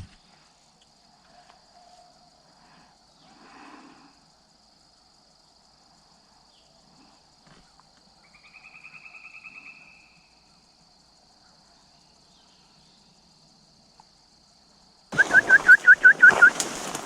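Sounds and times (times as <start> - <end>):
animal rapid trill call: 15.2 - 16.7.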